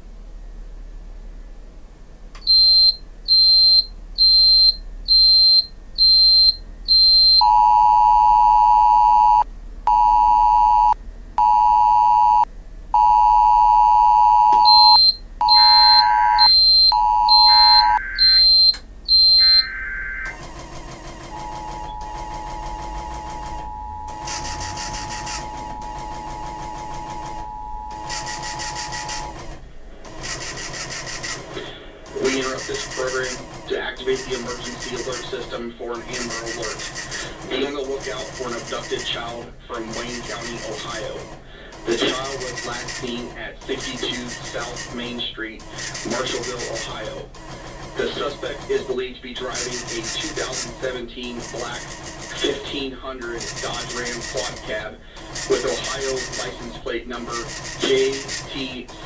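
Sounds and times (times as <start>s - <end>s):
short high beeps: 2.4s - 20.5s, 21.3s - 29.3s
steady electronic tones: 2.4s - 41.2s
steady attention tone: 2.4s - 47.1s
screechy data bursts: 2.5s - 7.4s, 14.5s - 29.4s, 30.2s - 31.5s, 32.1s - 41.2s, 41.8s - 45.1s, 45.7s - 59.0s.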